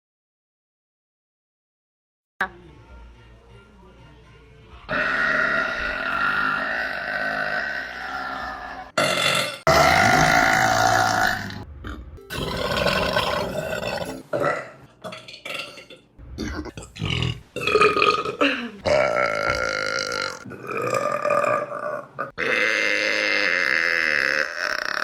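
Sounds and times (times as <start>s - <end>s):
woman burping: 9.0s - 11.6s, 12.3s - 25.0s.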